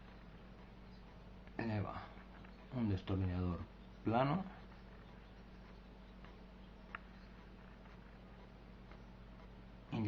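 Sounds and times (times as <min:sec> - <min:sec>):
faint ticks: 0:00.0 - 0:10.0
low hum: 0:00.0 - 0:10.0.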